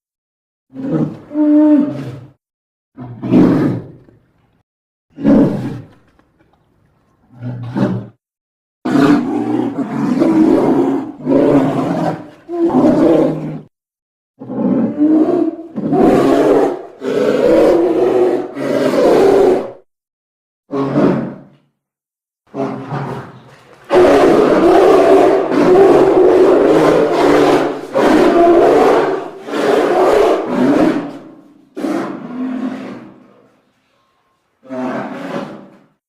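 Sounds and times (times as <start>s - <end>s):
loud pitched roars: 23.9s - 33.1s.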